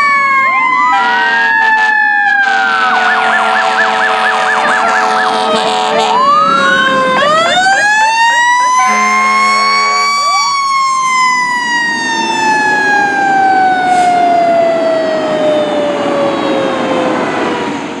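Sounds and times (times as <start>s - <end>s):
fire engine siren: 0.0s - 18.0s
air horn: 0.9s - 6.3s, 8.8s - 10.4s.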